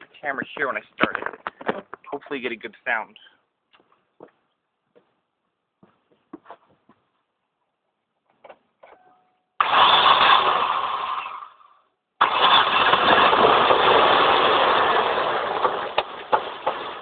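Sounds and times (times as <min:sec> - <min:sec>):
car engine starting: 0:09.6 - 0:11.5, 0:12.2 - 0:17.0.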